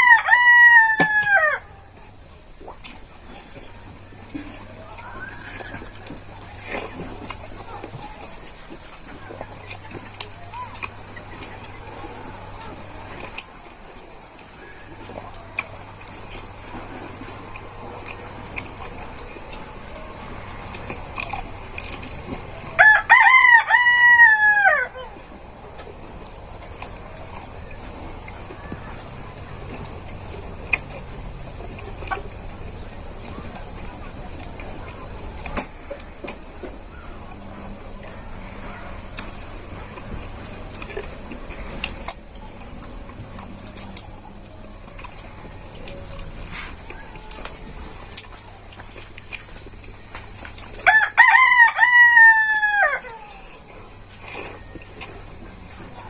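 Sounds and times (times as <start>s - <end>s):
rooster crowing: 0.0s - 1.8s, 22.8s - 25.2s, 50.8s - 53.4s
low background hum: 0.0s - 56.0s
chewing and mouth noises: 0.7s - 56.0s.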